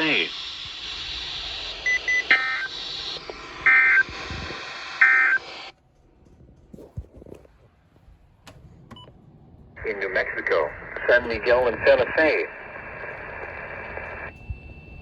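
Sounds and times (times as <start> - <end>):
warbling digital data bursts: 0.0 - 5.7
radio hiss: 0.0 - 5.8, 9.8 - 14.3.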